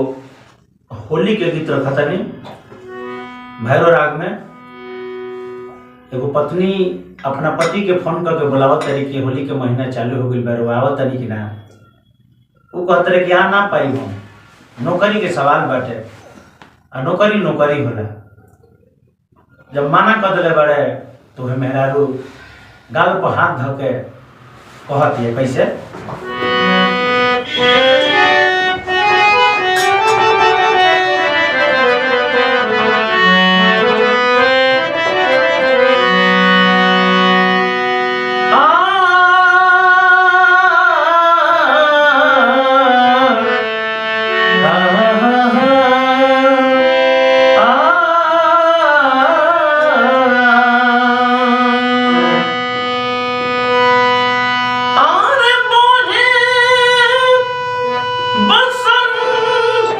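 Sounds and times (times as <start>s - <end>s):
harmonium: 1.2s - 8.3s, 24.2s - 59.9s
person singing wordless alap: 38.4s - 52.8s, 55.0s - 59.9s.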